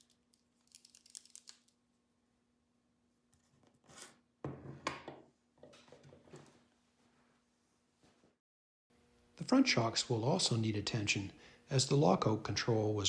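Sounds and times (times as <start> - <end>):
small metal parts clicking: 0.0 - 1.8.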